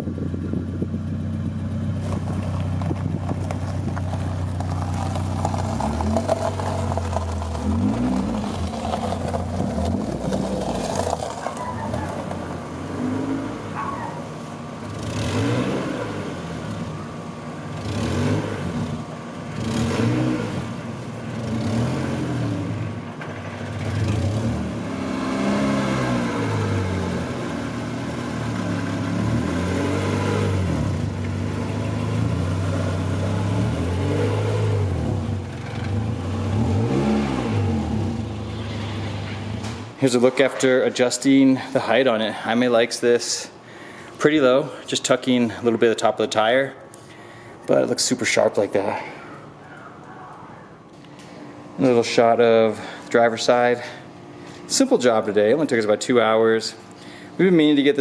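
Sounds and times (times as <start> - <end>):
car engine revving: 0.1 - 40.0.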